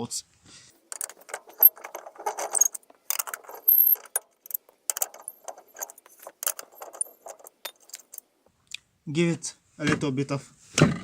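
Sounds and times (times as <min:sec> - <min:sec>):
hand tools clinking on metal: 0:00.9 - 0:08.2.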